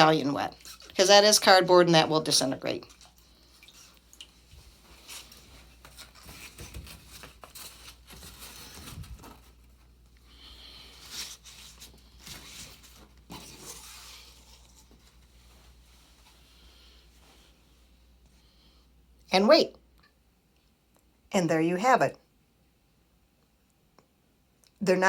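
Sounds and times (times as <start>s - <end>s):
fabric rustling: 2.8s - 18.2s.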